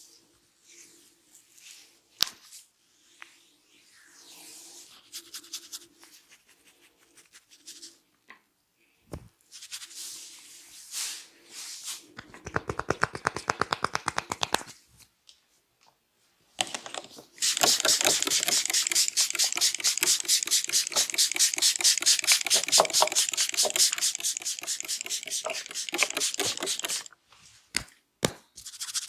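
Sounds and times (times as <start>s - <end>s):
light taps on head: 12.2s - 14.7s
palms rubbing through hair: 12.2s - 14.7s, 16.6s - 27.1s.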